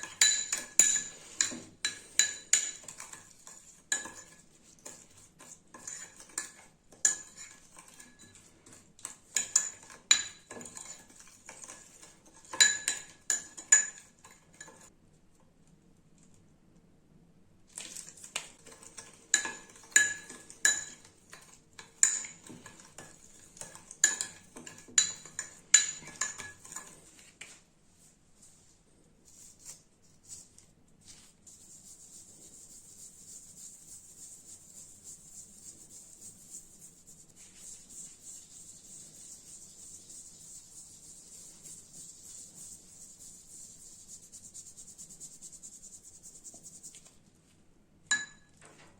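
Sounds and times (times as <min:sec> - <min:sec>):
spoon clinking against dish: 0:00.0 - 0:03.3, 0:03.9 - 0:08.4, 0:09.3 - 0:11.8, 0:12.4 - 0:14.9, 0:18.7 - 0:27.0, 0:48.1 - 0:48.5.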